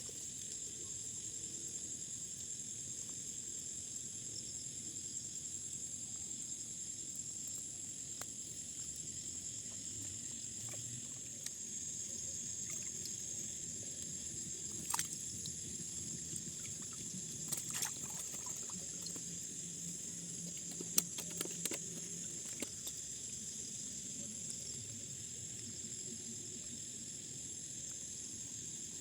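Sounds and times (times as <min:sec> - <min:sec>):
night insects chorus: 0:00.0 - 0:29.0
water splashing and trickling: 0:09.7 - 0:23.5.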